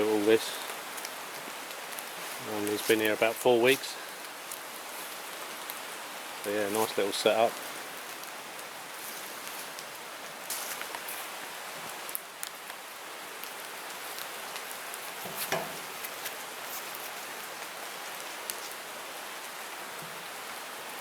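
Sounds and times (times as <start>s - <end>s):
rain hissing: 0.0s - 21.0s
raindrop taps: 14.2s - 16.4s.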